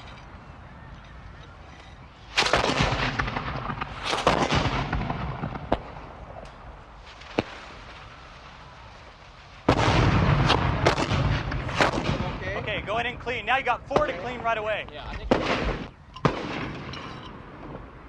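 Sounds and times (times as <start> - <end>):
rifle shots echoing: 2.3 - 6.6, 9.7 - 12.4, 15.2 - 18.0.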